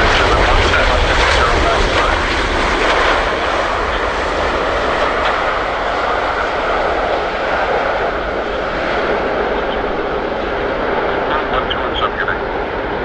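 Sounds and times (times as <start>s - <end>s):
jet airliner landing roar: 0.0s - 13.0s.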